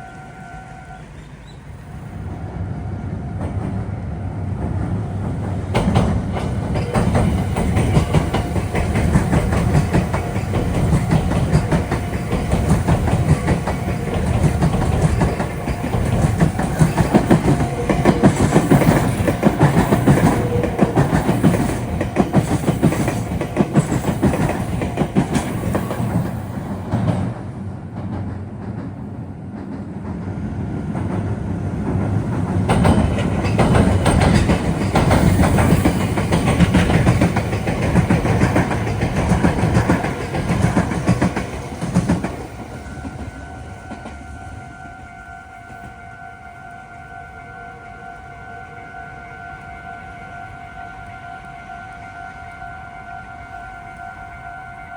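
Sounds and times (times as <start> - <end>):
electric train passing: 0.0 - 54.9
wheels clattering over rail joints: 4.6 - 43.3.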